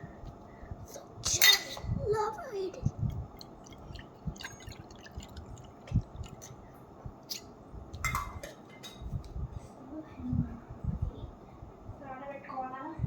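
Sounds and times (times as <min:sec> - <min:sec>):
wet squishing: 0:03.0 - 0:06.6
bowl and utensils clicking: 0:07.3 - 0:09.1.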